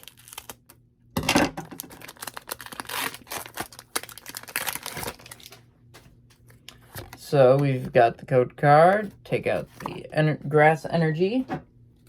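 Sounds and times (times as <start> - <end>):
foil wrapper crinkling and tearing: 0.0 - 0.8, 1.7 - 5.7.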